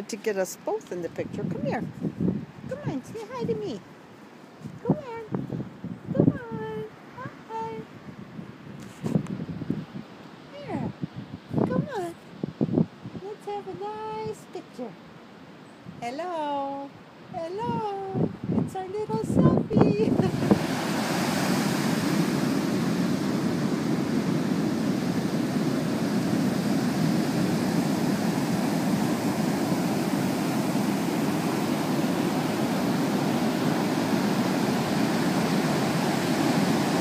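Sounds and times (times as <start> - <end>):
ocean surf rushing: 20.0 - 37.0.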